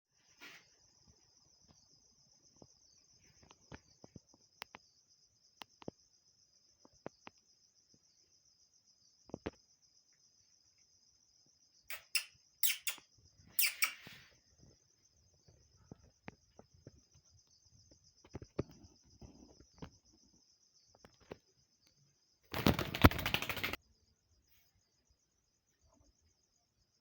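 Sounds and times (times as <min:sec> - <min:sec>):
pulsing insect trill: 0:01.2 - 0:27.0
bird chirping: 0:11.9 - 0:14.6.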